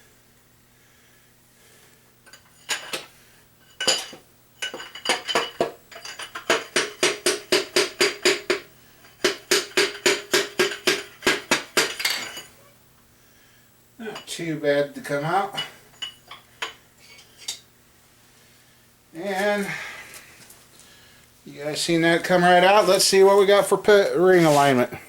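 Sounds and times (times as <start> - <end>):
hammer tapping on metal: 6.4 - 12.2.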